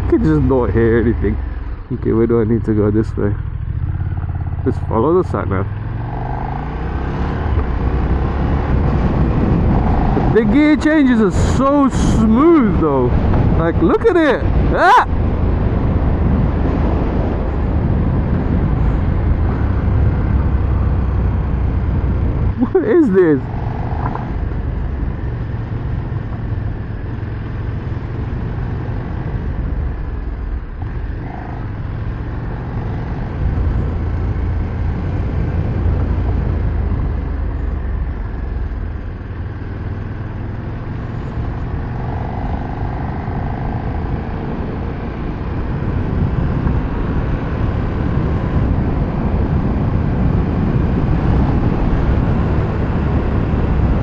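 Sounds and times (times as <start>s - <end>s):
motorcycle engine running: 0.0s - 54.0s
wind rushing over microphone: 3.4s - 54.0s.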